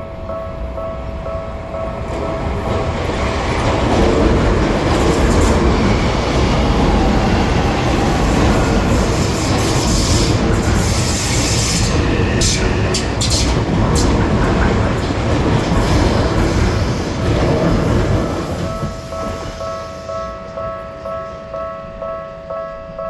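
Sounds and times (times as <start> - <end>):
crossing bell ringing tone: 0.0 - 11.1, 17.4 - 23.0
train wheels rumbling on rails: 0.0 - 21.4.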